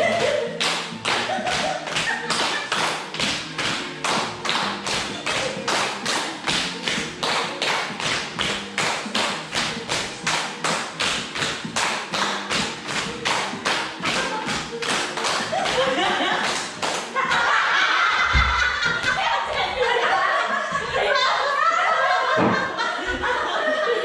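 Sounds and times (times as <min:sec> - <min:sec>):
rhythmic sharp tapping: 0:00.0 - 0:17.5.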